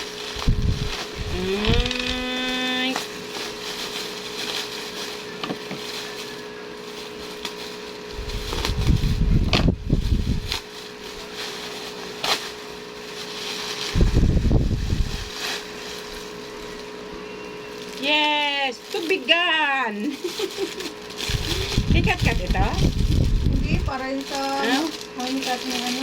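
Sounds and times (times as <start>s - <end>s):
packaging rubbing and rustling: 0.0s - 26.0s.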